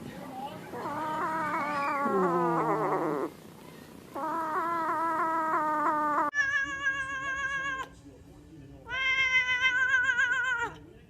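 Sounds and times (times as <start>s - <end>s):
cat yowling: 0.7s - 3.3s, 4.2s - 7.9s, 8.9s - 10.8s.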